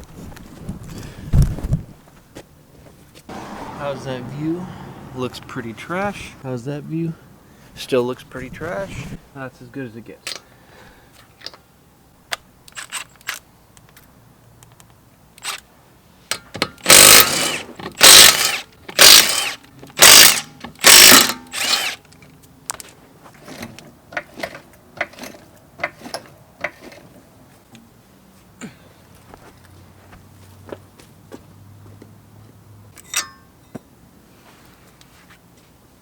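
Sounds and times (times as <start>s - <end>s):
ratchet rattling bursts: 16.8s - 22.0s
ratchet tool clicking: 16.8s - 22.0s.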